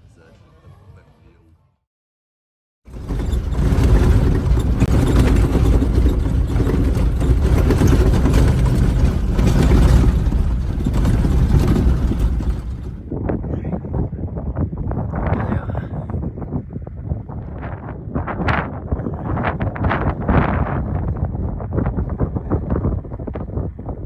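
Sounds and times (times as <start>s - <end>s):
moving vehicle rumble: 2.9s - 13.4s.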